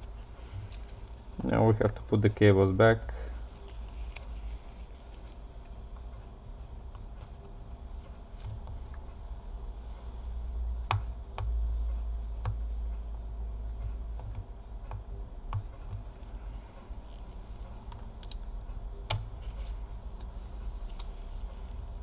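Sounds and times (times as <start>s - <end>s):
light clicks of laptop connectors: 17.9s - 18.5s, 19.1s - 21.2s.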